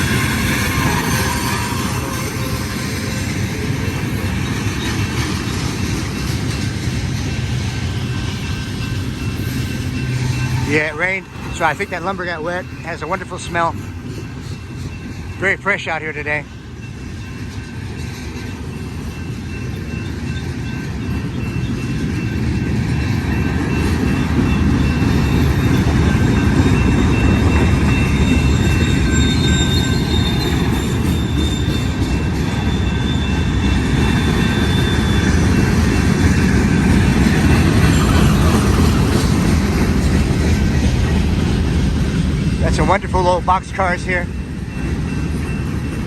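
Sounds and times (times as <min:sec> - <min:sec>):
high thin wheel squeal: 0:00.0 - 0:03.0, 0:07.9 - 0:15.4, 0:27.9 - 0:38.9
train wheels rumbling on rails: 0:00.0 - 0:46.0.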